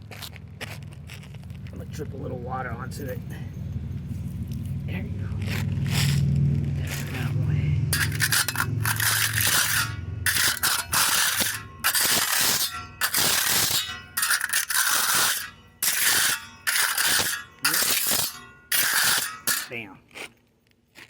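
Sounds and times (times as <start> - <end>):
wet sponge scratching concrete: 5.2 - 20.4.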